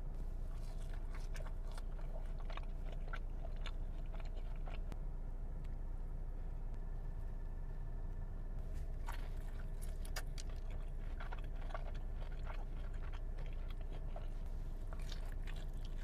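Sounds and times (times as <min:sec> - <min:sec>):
low hum: 0:00.0 - 0:16.0
chewing crisp food: 0:00.4 - 0:05.0, 0:08.7 - 0:16.0.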